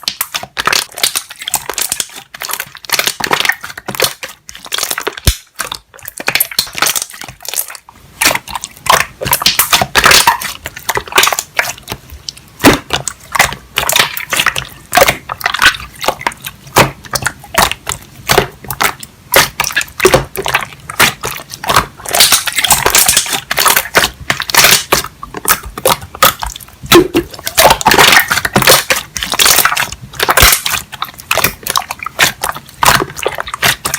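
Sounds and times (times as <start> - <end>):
slime squished by hand: 0.0 - 33.9.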